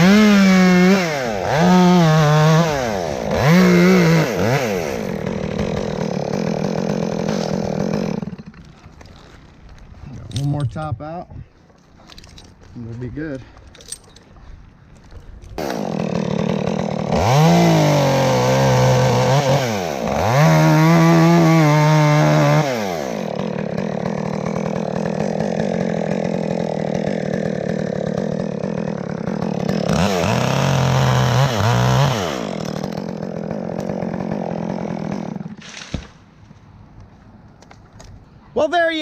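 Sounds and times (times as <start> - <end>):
chainsaw revving: 0.0 - 9.5, 15.6 - 35.9.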